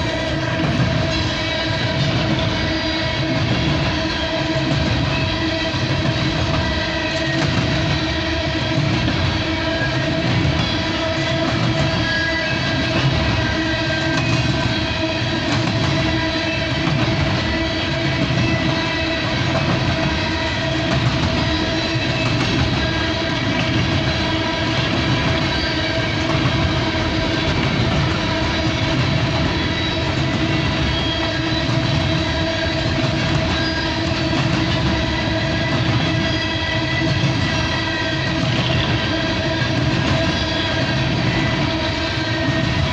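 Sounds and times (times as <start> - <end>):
train wheels clattering over rail joints: 0.0 - 42.9.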